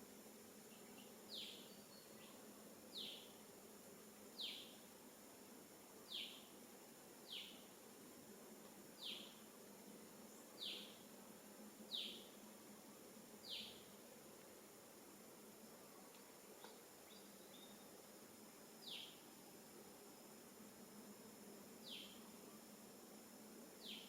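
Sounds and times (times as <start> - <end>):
faint background hiss: 0.0 - 24.0.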